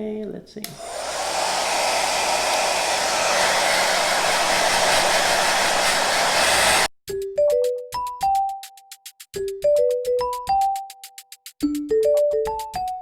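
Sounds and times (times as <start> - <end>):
hair dryer blowing: 0.7 - 6.9.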